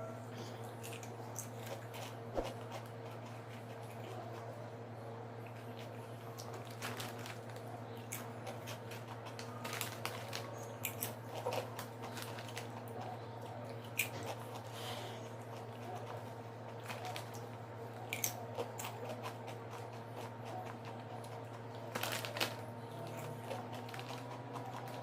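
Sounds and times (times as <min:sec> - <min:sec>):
person chewing crisps: 0:00.6 - 0:04.7, 0:05.3 - 0:25.0.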